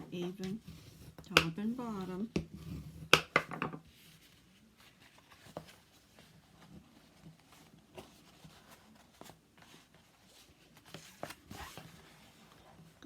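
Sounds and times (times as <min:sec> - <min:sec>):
paper rustling: 0:03.9 - 0:13.0.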